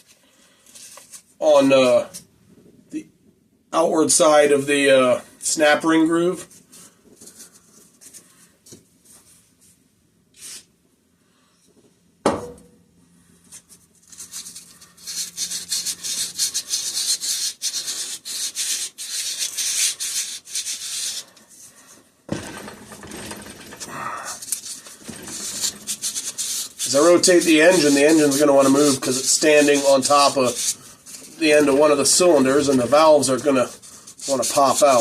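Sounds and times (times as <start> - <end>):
sharp knock: 12.2 - 12.8
sandpaper rasping on metal: 14.0 - 21.3, 22.4 - 35.0.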